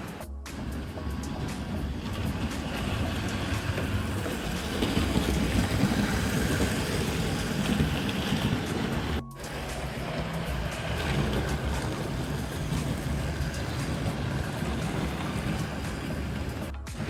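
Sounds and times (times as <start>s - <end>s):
train rumbling on track: 0.0s - 17.0s.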